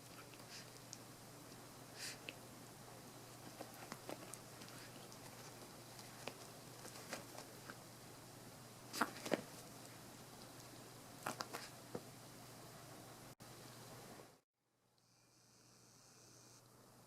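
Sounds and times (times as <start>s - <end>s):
dog paws tapping and scratching: 0.0s - 1.0s, 3.3s - 7.8s, 8.9s - 12.1s
background hiss: 0.0s - 17.0s.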